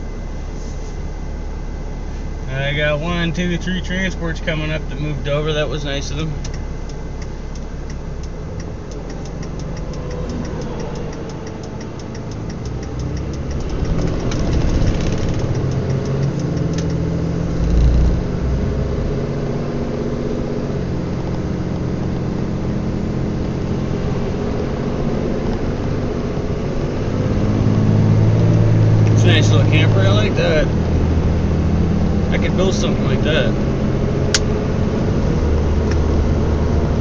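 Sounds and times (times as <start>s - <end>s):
vehicle engine and road noise: 0.0s - 37.0s
fast even ticking: 6.5s - 17.0s.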